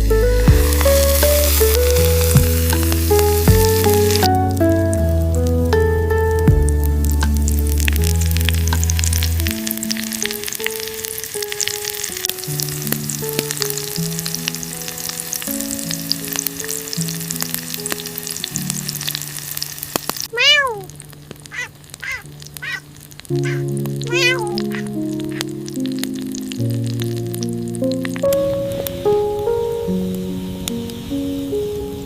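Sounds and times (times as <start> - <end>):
slow music of held notes: 0.0 - 20.3, 20.9 - 32.0
sizzling crackle: 0.0 - 32.0
cat meowing: 20.3 - 25.5.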